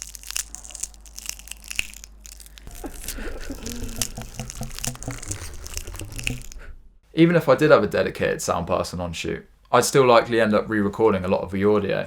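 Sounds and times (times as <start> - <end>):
crunching and crackling: 0.0 - 7.0.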